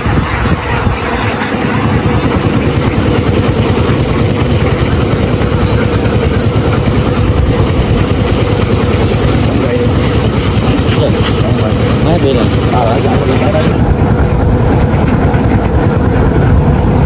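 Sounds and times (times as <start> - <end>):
engine running with low pulse: 0.0 - 17.0.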